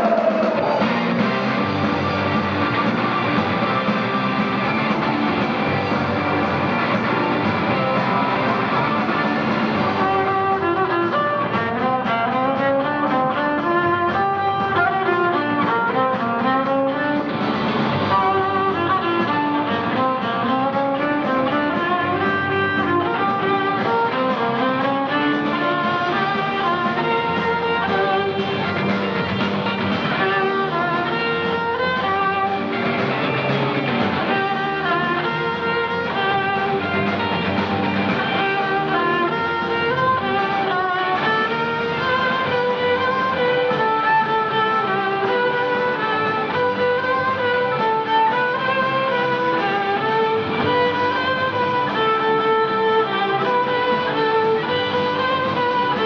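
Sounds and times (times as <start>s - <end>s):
guitar accompaniment: 0.0s - 56.0s
violin melody: 0.0s - 56.0s.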